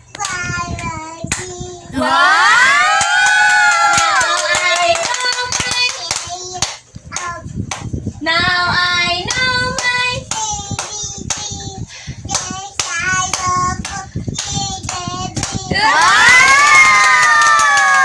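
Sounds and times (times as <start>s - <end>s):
rhythmic hand clapping: 0.1s - 1.6s, 2.9s - 8.0s, 9.2s - 11.7s, 12.3s - 18.0s.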